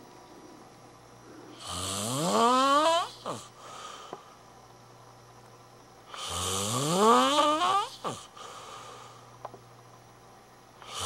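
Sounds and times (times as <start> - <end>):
person snoring: 1.4 - 4.0, 6.1 - 9.2.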